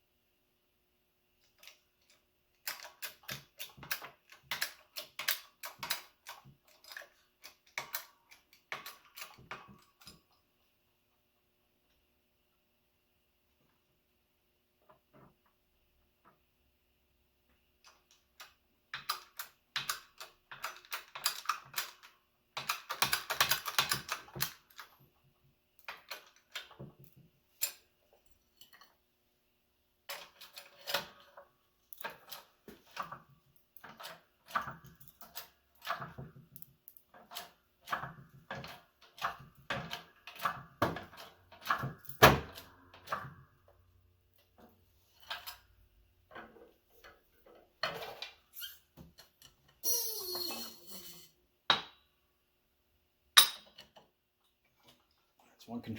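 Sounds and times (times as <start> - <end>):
metal tools clinking: 53.4 - 53.8.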